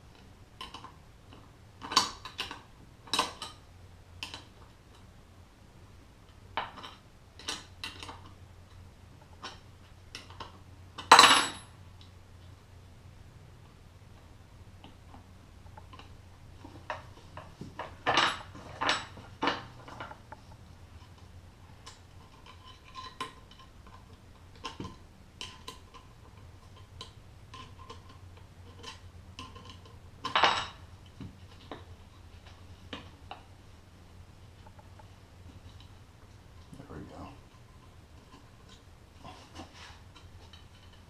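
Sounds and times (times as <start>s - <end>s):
metal parts clinking on a work surface: 10.2s - 11.8s, 17.8s - 20.1s, 28.8s - 30.8s.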